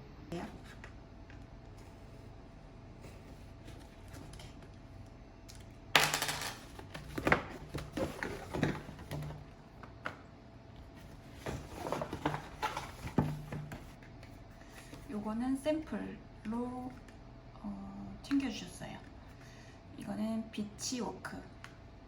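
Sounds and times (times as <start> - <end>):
cardboard rustling: 1.7 - 4.6, 6.6 - 9.5, 10.8 - 14.0.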